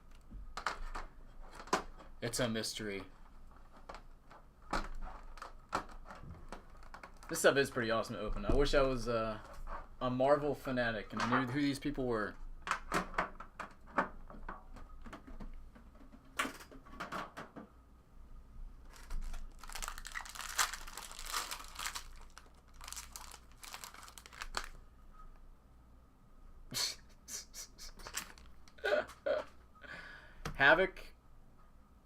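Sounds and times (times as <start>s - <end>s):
packaging crinkling and tearing: 4.9s - 7.6s, 18.9s - 24.8s, 28.0s - 28.9s.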